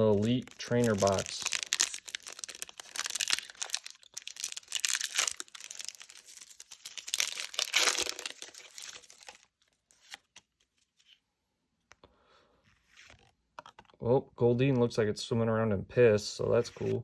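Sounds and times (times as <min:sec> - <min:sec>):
foil wrapper crinkling and tearing: 0:00.0 - 0:10.3.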